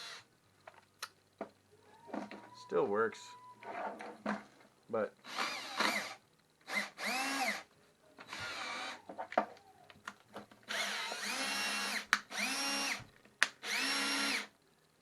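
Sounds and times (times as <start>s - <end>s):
cordless drill motor spinning: 0.0s - 0.2s, 5.2s - 7.7s, 8.3s - 9.1s, 10.7s - 14.5s
drill clicks: 5.3s - 7.7s, 10.7s - 14.5s.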